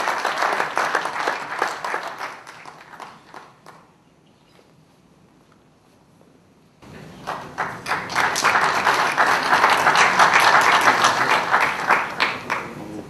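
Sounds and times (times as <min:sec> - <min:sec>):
audience applauding: 0:00.0 - 0:03.9, 0:06.8 - 0:13.0.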